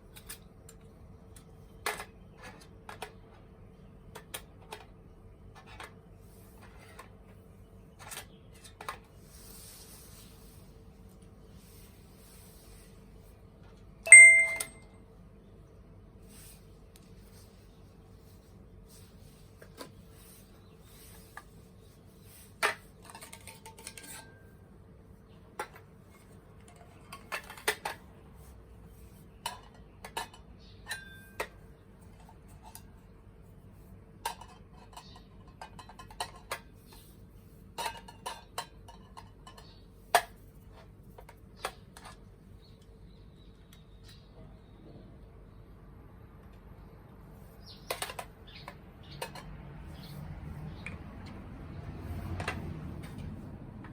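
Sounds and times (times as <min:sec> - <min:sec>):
metal cookware clinking and knocking: 0:14.1 - 0:14.7.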